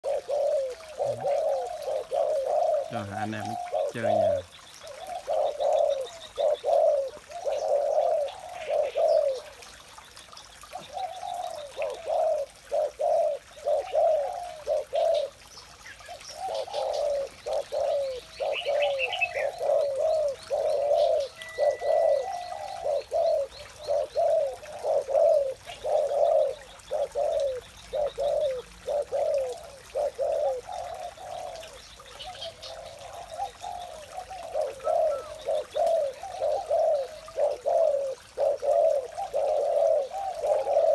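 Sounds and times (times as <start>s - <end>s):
dove cooing: 0.0s - 9.8s, 10.6s - 40.9s
small birds chirping: 0.0s - 40.9s.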